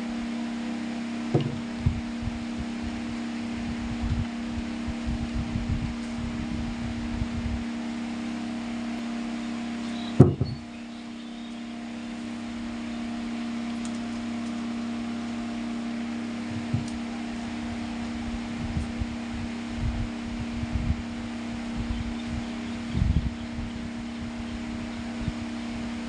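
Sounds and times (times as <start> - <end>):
fan motor humming: 0.0 - 26.0
low thumps: 1.3 - 2.0, 10.2 - 10.6, 16.5 - 16.9.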